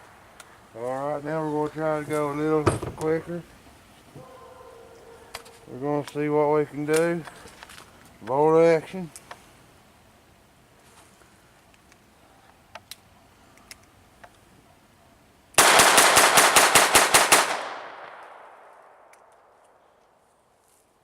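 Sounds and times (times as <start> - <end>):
rapid burst of gunshots: 15.6 - 17.9.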